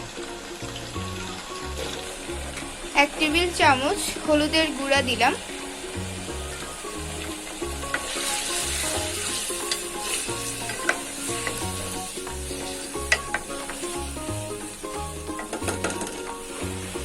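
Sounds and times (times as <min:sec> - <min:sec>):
potatoes sizzling in hot oil: 0:00.0 - 0:17.0
music with repeating bass line: 0:03.3 - 0:15.9
spatula stirring in a pan: 0:06.7 - 0:17.0.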